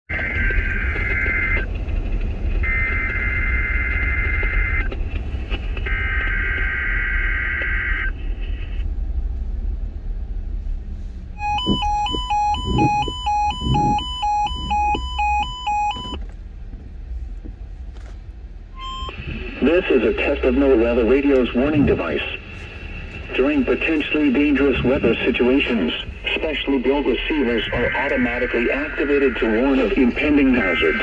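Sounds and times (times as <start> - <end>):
steady low rumble: 0.1 - 6.8, 8.0 - 31.0
buzzy data tone bursts: 11.4 - 16.2
two-pitch alert beep: 11.4 - 16.2, 18.8 - 19.4.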